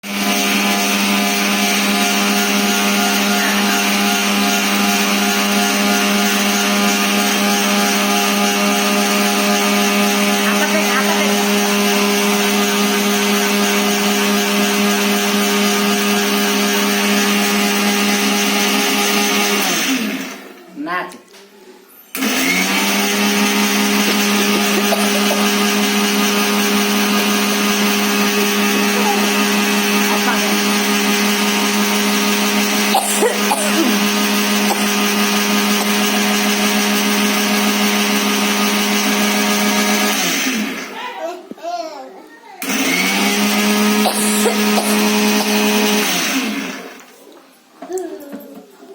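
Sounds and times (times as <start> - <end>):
grinder machine humming: 0.0 - 20.7, 22.1 - 41.0, 42.6 - 47.3.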